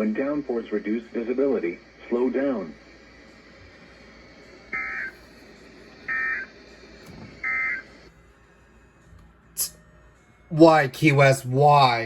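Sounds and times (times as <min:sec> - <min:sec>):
static hiss: 0:00.0 - 0:08.1.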